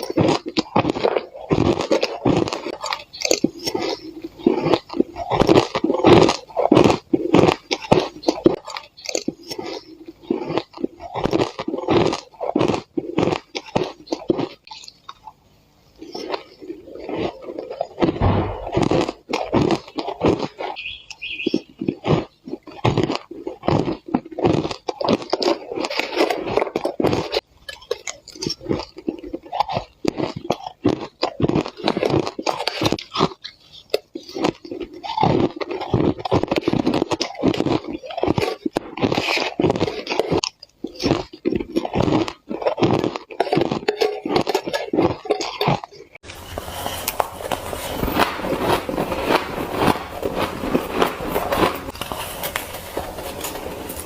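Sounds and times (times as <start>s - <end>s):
crunching shaved ice while chewing: 0.0s - 54.0s.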